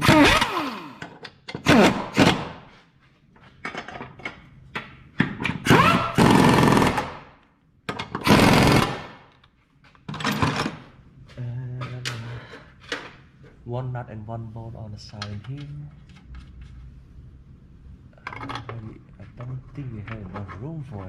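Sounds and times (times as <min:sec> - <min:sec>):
impact wrench hammering: 0:00.0 - 0:02.6, 0:05.2 - 0:07.3, 0:07.9 - 0:09.2.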